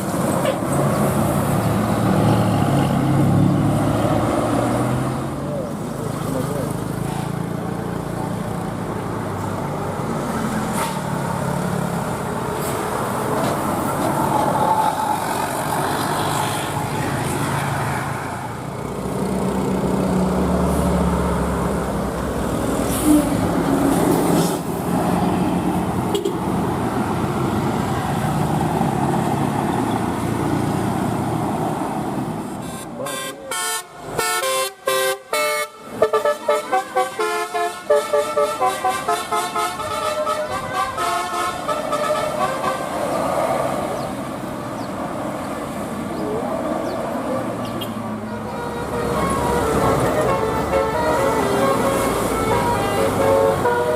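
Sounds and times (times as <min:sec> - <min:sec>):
bus engines running: 0:00.0 - 0:53.9
traffic noise: 0:00.0 - 0:53.9
bus air horns playing melody: 0:26.1 - 0:26.4, 0:32.6 - 0:43.0, 0:47.8 - 0:53.9.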